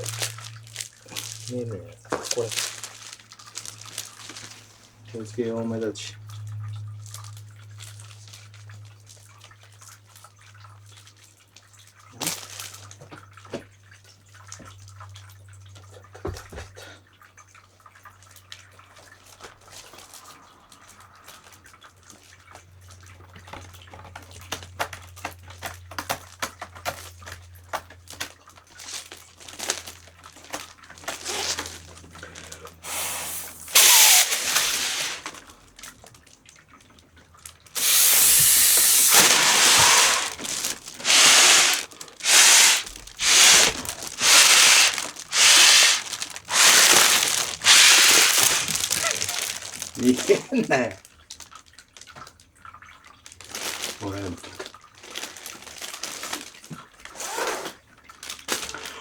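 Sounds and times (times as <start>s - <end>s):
plastic clicking and crinkling: 0.0s - 4.7s, 37.8s - 50.6s
loud hiss: 32.8s - 35.3s, 37.8s - 49.7s.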